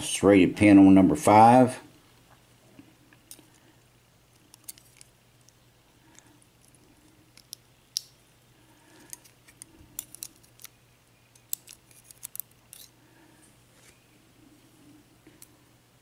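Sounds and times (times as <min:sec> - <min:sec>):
light metallic clicks of lock parts: 0:09.1 - 0:12.9.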